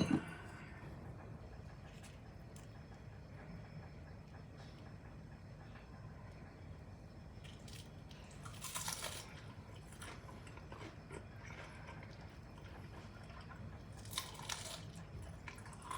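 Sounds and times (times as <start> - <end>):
chewing: 7.4 - 15.9
crunching bites of fried chicken: 7.5 - 15.9.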